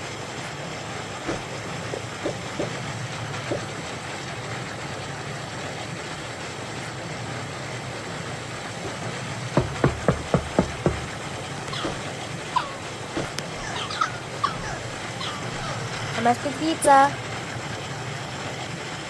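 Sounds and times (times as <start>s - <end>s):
steady background hiss: 0.0s - 19.0s
knocks on a door: 9.6s - 11.2s.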